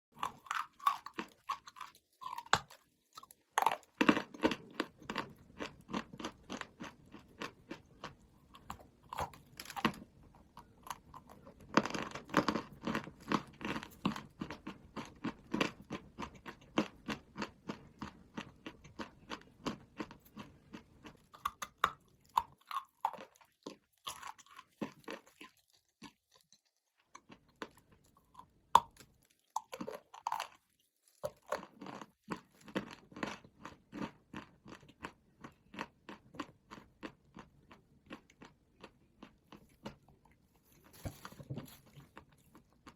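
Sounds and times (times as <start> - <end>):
chalk crunching while chewed: 0.2 - 42.9.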